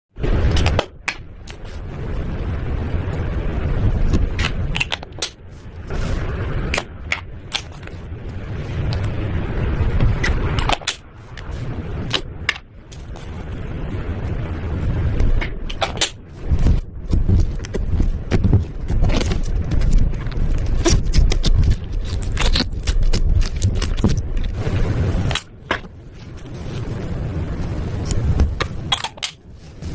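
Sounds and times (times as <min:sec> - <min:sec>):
slime squelching: 0:15.3 - 0:29.9.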